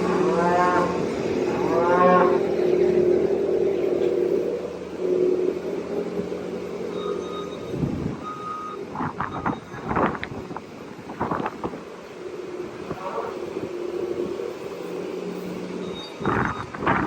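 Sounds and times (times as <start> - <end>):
loader engine running: 0.0 - 17.0
backup alarm beeps: 6.9 - 9.9, 15.8 - 16.8.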